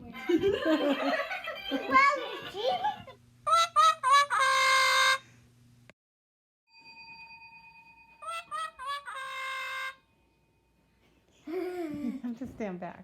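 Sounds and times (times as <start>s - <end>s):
bell-like jingle: 6.7s - 8.5s.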